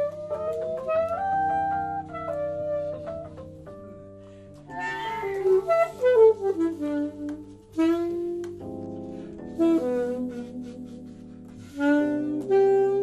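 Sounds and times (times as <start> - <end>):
saxophone phrases: 0.0 - 3.4, 4.7 - 8.7, 9.4 - 13.0
held low instrument notes: 4.6 - 13.0.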